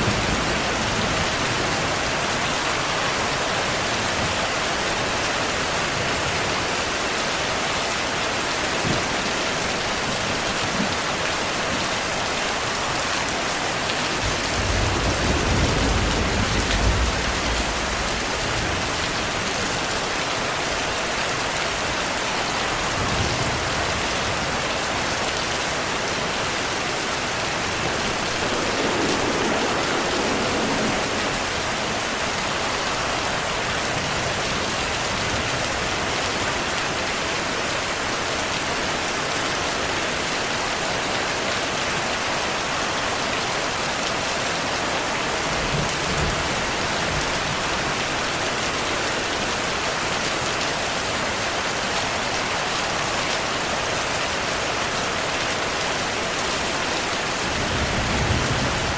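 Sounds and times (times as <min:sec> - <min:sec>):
heavy rain on a surface: 0:00.0 - 0:58.9
distant thunder rumble: 0:14.2 - 0:19.5, 0:26.6 - 0:34.3.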